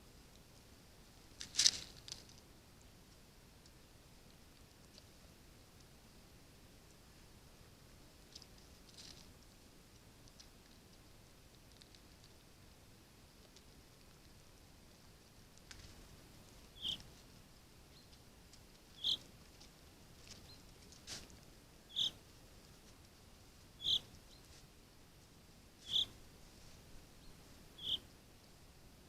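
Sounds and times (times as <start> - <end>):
bird giving high calls: 16.8 - 17.0, 19.0 - 19.2, 21.9 - 22.2, 23.8 - 24.1, 25.8 - 26.2, 27.8 - 28.1.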